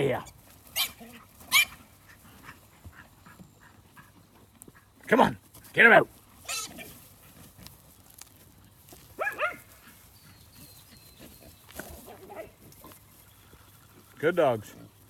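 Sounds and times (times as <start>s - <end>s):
faint dog yelp: 0.8s - 1.8s, 9.2s - 9.7s
dog barking: 9.2s - 9.7s, 12.1s - 12.6s.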